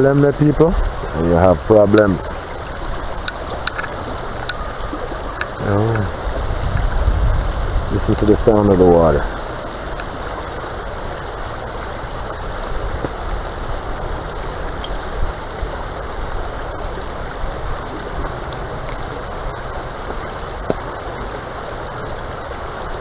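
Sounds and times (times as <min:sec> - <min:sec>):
river water rushing: 0:00.0 - 0:23.0.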